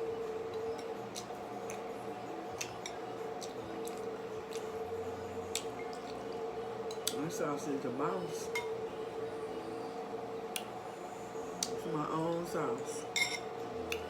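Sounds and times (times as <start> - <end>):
steady background hum: 0.0 - 14.0
chewing with wet mouth clicks: 0.5 - 1.9, 2.5 - 4.8, 5.5 - 7.2, 10.5 - 10.7.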